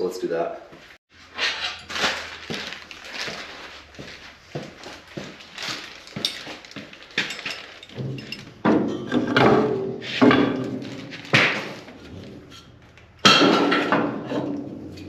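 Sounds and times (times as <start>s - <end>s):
metal parts clanking: 6.1s - 15.0s.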